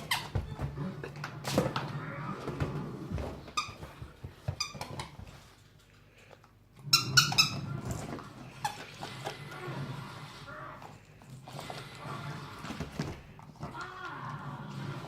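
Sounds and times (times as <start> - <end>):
squeaky toy squeaks: 6.8 - 7.6.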